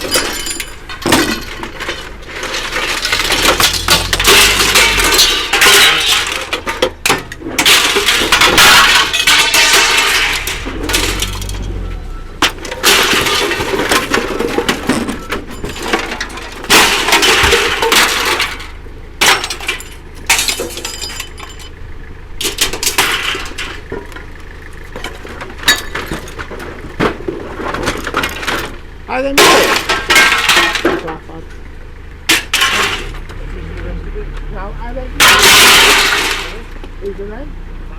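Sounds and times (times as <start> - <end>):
sharp metal bangs: 0.0 - 21.7, 32.2 - 33.3, 35.1 - 36.8
scrap metal crashing and clattering: 0.0 - 33.8, 34.5 - 37.1.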